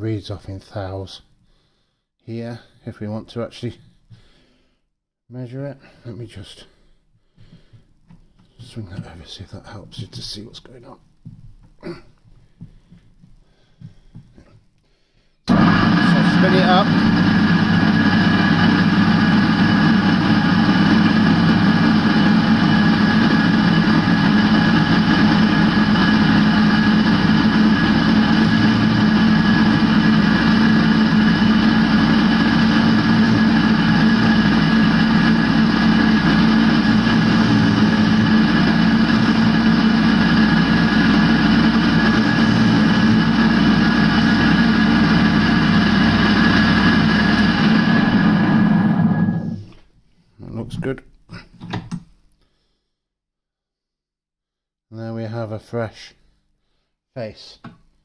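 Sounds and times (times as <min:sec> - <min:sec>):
grinding wheel refacing a valve: 0:15.5 - 0:49.6.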